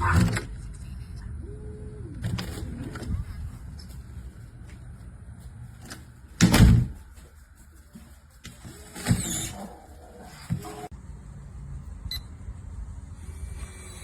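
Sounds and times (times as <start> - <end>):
door thud: 6.4 - 7.0.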